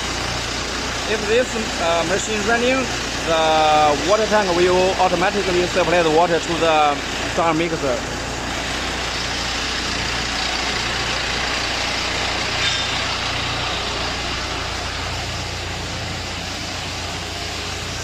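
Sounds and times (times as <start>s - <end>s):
diesel engine running: 0.0s - 18.0s
high squeak: 12.6s - 13.2s.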